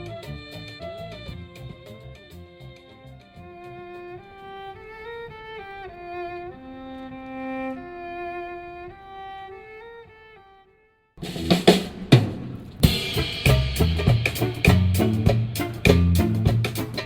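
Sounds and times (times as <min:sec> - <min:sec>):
bass line: 0:00.0 - 0:03.2, 0:11.2 - 0:11.8, 0:12.8 - 0:17.0
drum kit: 0:00.0 - 0:03.5, 0:11.2 - 0:17.0
bowed string melody: 0:00.0 - 0:10.5, 0:12.9 - 0:17.0.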